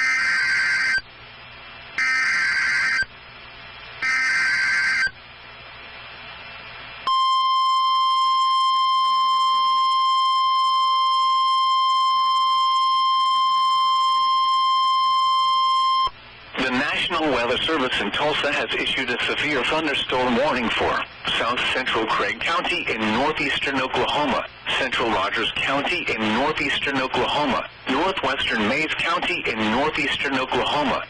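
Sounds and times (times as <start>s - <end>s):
steady warning alarm tone: 0.0s - 1.0s, 2.0s - 3.1s, 4.0s - 5.2s, 7.1s - 16.1s.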